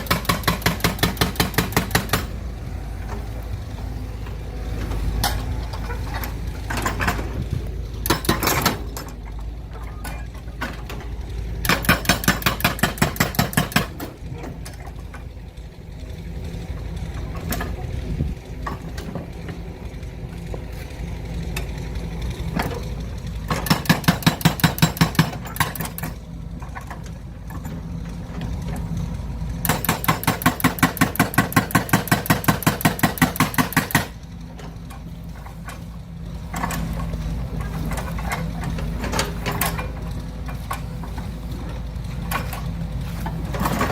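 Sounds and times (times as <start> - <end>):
rapid mechanical clicking: 0.0 - 2.4, 5.2 - 9.2, 10.6 - 15.0, 21.4 - 27.8, 28.7 - 42.8
steady low rumble: 2.3 - 11.7, 14.1 - 23.5.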